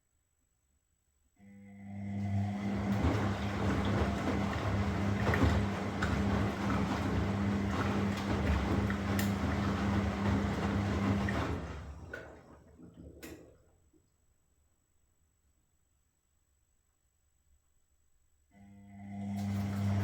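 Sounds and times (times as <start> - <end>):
washing machine running: 1.7 - 13.7, 18.6 - 20.0.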